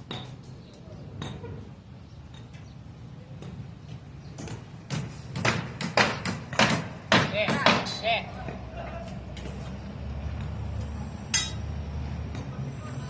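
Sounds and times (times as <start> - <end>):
hammer strikes: 4.4 - 7.9, 11.3 - 11.6.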